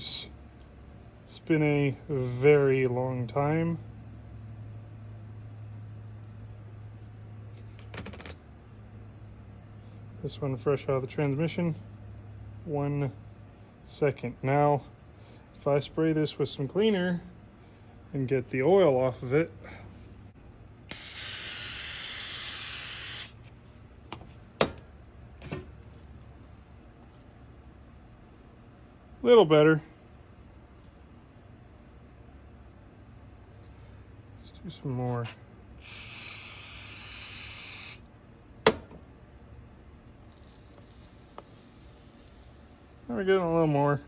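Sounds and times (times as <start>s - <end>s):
aerosol spray hiss: 20.9s - 23.4s, 35.8s - 38.0s.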